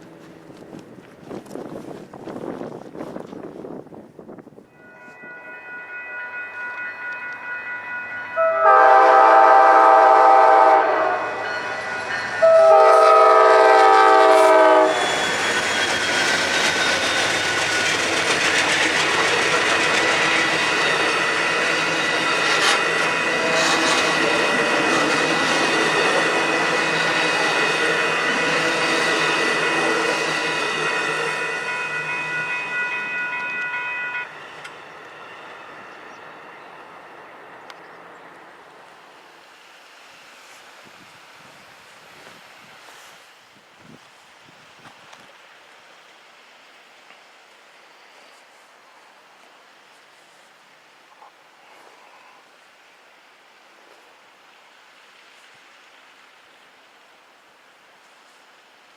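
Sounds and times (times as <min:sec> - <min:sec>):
locomotive bell ringing: 0:04.6 - 0:13.6, 0:14.4 - 0:38.5
locomotive horn blasts: 0:08.3 - 0:11.8, 0:12.4 - 0:15.3
train wheels clickety-clack: 0:14.2 - 0:33.8.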